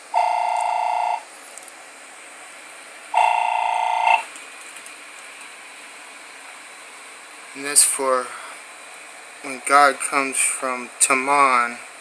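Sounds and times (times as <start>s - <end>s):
buzzing tone: 0.0s - 1.2s, 3.1s - 4.3s
low steady hiss: 0.1s - 12.0s.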